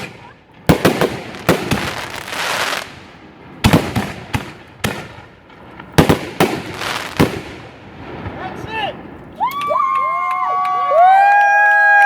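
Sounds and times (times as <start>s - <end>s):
fireworks bangs: 0.0s - 9.7s
fireworks crackling: 0.0s - 10.4s.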